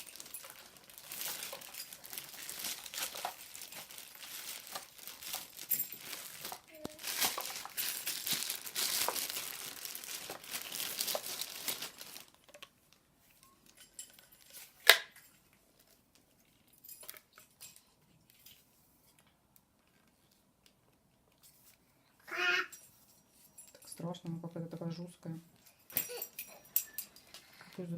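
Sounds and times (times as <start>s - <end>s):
packaging crinkling: 0.0s - 12.7s.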